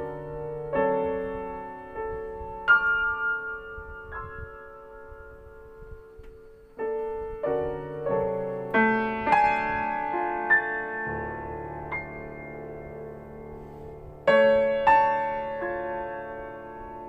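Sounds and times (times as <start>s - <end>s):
solo piano playing: 0.0s - 17.0s.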